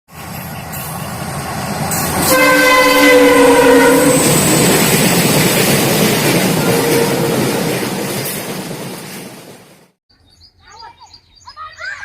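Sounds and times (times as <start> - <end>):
rumble of locomotive and train: 0.1 - 10.0
locomotive horn blast: 2.0 - 4.5, 6.6 - 7.6.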